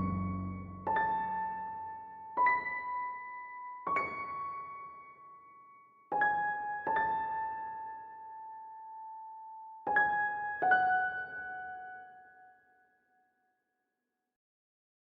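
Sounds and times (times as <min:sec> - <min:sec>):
slow piano notes: 0:00.0 - 0:05.2.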